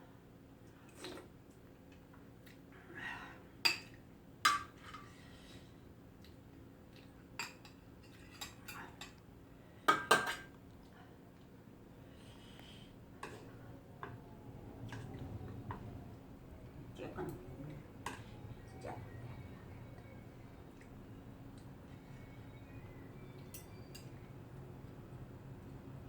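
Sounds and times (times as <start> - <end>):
utensils clinking against dishes: 7.4 - 9.2, 9.9 - 10.5, 23.2 - 24.3.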